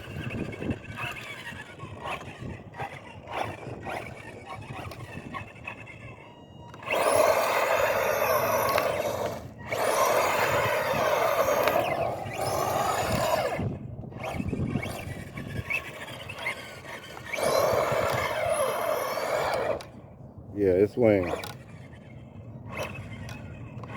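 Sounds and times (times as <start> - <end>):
electric motor whining: 0.0 - 23.9
tyres rushing: 6.8 - 19.8.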